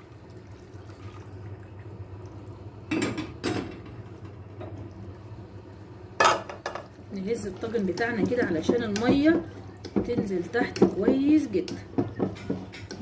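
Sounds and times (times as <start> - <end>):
boiling water pouring from a kettle: 0.0 - 6.2.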